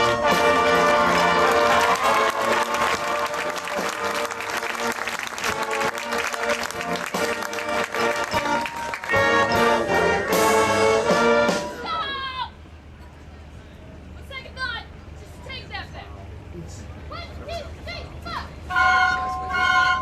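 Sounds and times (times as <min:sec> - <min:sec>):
marching band playing: 0:00.0 - 0:12.8, 0:17.5 - 0:20.0
crowd applause: 0:00.8 - 0:10.2.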